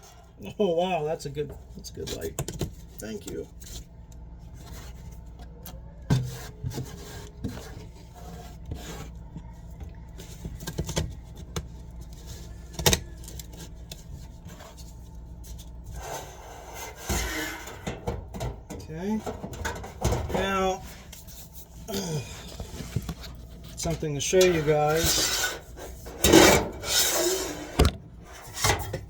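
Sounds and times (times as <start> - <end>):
hands and tools scraping: 6.1 - 18.1, 19.0 - 29.0.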